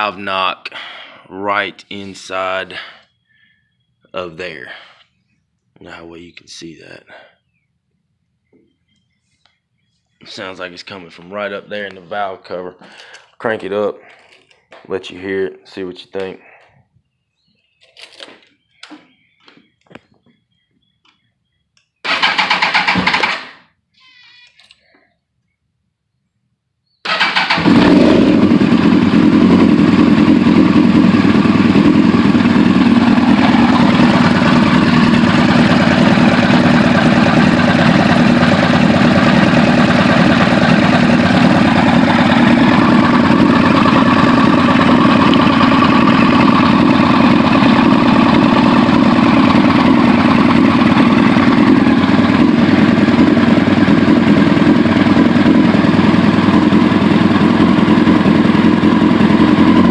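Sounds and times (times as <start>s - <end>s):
motorcycle engine starting and idling: 22.0s - 23.7s, 27.0s - 59.9s.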